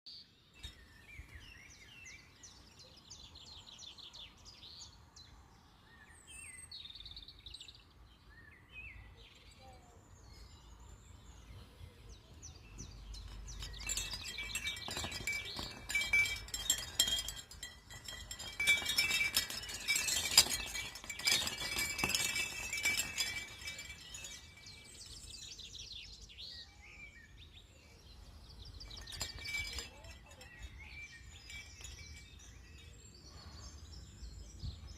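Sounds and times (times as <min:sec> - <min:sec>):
birds chirping and trilling: 0:00.1 - 0:34.9
wind chimes jangling: 0:12.7 - 0:26.6, 0:28.4 - 0:34.6.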